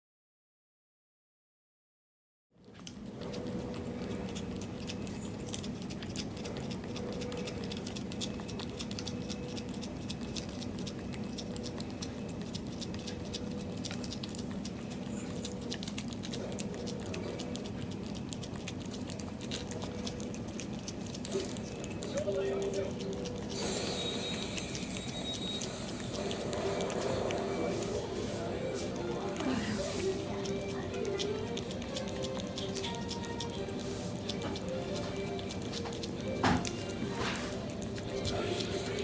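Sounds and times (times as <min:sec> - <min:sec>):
cat licking wet tongue clicks: 0:02.8 - 0:23.8.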